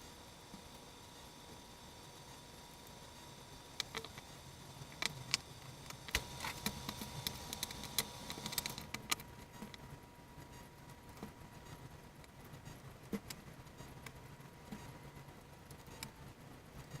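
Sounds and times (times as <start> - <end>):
small hard parts clicking: 4.9 - 9.8.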